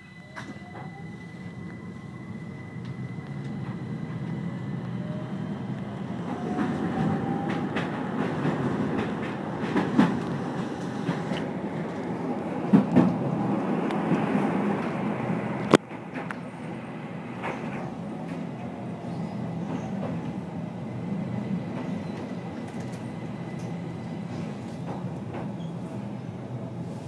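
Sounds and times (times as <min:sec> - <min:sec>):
train motor whine: 0:00.0 - 0:08.3.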